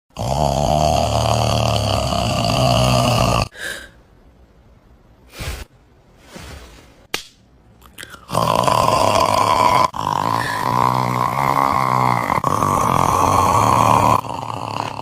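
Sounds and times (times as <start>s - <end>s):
man snoring loudly: 0.1s - 3.6s, 8.2s - 15.0s.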